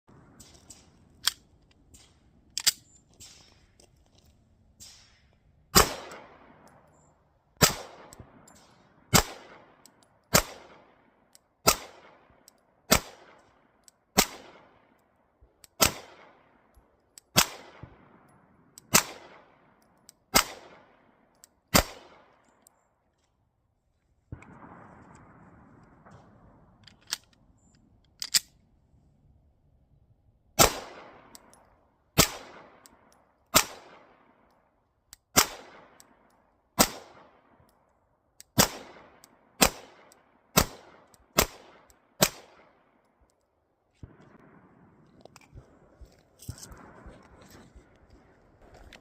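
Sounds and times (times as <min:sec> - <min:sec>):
pistol shots with echo: 0:05.7 - 0:06.8, 0:07.6 - 0:13.4, 0:14.1 - 0:14.9, 0:15.8 - 0:16.6, 0:17.3 - 0:22.4, 0:30.6 - 0:31.4, 0:32.2 - 0:34.4, 0:35.3 - 0:36.2, 0:36.8 - 0:37.6, 0:38.5 - 0:43.0.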